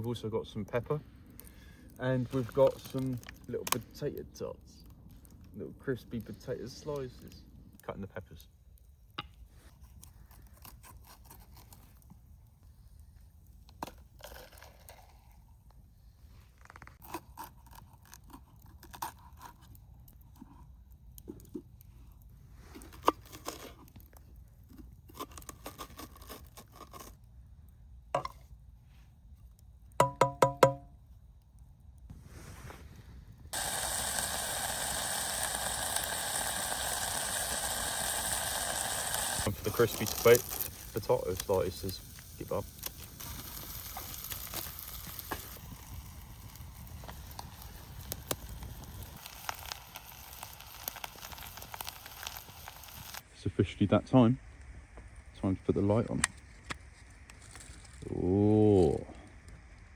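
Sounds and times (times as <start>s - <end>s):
sharp pops and crackles: 0.0s - 28.6s, 29.3s - 53.3s, 54.4s - 59.9s
potatoes sizzling in a pan: 33.5s - 53.2s.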